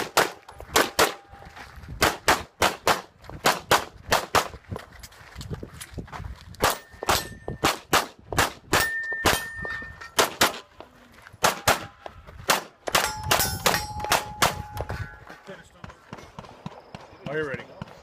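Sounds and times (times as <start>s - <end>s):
pistol shots: 0.0s - 1.2s, 2.0s - 4.5s, 6.6s - 9.5s, 11.4s - 14.7s
steel target plate ringing: 6.7s - 7.6s, 8.8s - 10.2s, 13.0s - 15.3s.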